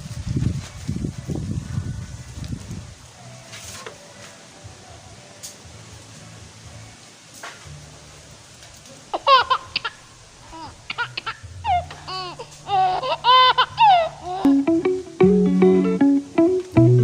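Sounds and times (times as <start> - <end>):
baby laughing and squealing: 9.1 - 14.5.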